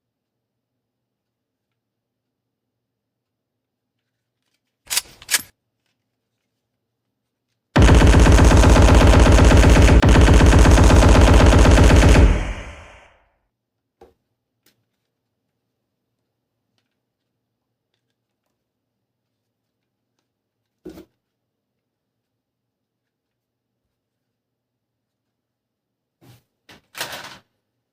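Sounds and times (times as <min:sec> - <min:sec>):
electronic machine-gun sound effect: 0:07.8 - 0:13.1.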